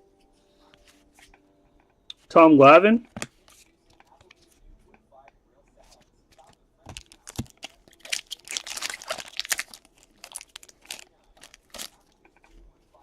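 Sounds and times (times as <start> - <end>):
foil wrapper crinkling: 6.9 - 12.1.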